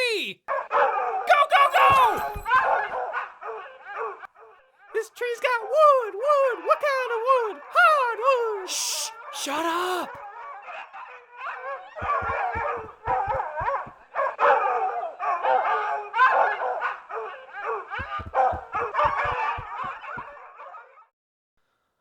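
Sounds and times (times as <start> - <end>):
dogs barking and howling: 0.5 - 1.2, 14.2 - 19.4
short low thuds: 1.8 - 3.0, 12.0 - 14.0, 18.0 - 20.3.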